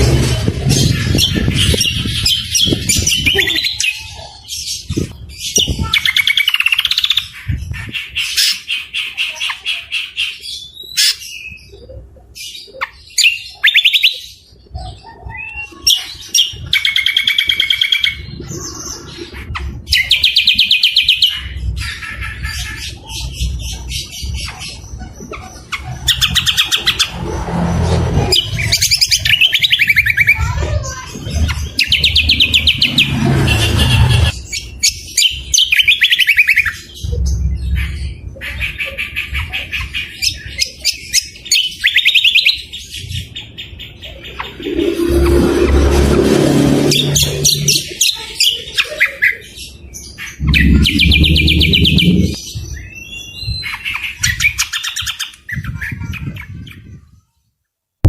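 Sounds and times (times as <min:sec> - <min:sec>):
songbirds singing: 0:00.0 - 0:45.1, 0:47.0 - 0:57.2
low background rumble: 0:50.4 - 0:52.6.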